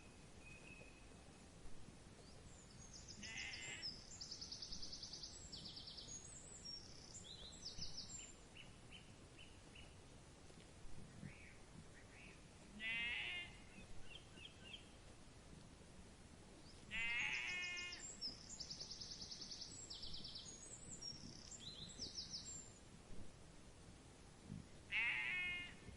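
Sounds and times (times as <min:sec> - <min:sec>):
outdoor background hiss: 0:00.0 - 0:25.9
faint sheep bleat: 0:03.2 - 0:03.9, 0:12.8 - 0:13.7, 0:16.9 - 0:18.1, 0:24.9 - 0:25.9
trilling bird calls: 0:03.2 - 0:04.0, 0:16.9 - 0:18.3.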